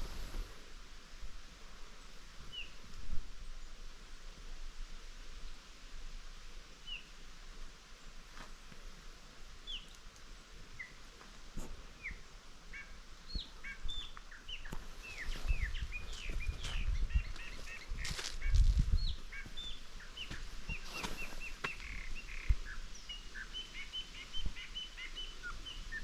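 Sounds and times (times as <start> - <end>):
small birds chirping: 9.6 - 26.0.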